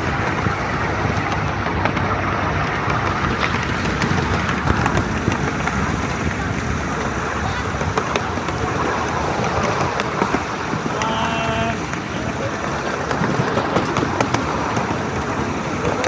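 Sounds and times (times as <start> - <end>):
miniature steam train running: 0.0 - 16.0.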